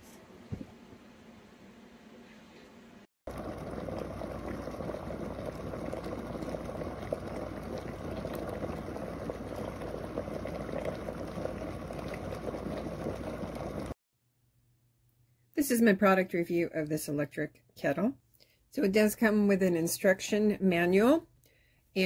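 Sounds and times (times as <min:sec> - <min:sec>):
kettle boiling water: 0:03.3 - 0:14.0.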